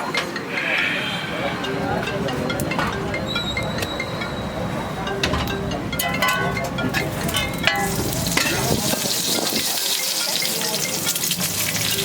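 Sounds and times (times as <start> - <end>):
food sizzling in hot oil: 7.8 - 12.0.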